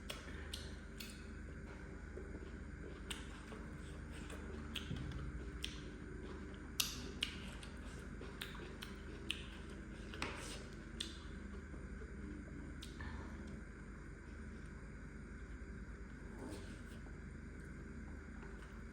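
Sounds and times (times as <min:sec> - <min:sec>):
low steady hum: 0:00.0 - 0:18.9
mouth smacks and clicks: 0:04.7 - 0:05.9, 0:06.8 - 0:11.3.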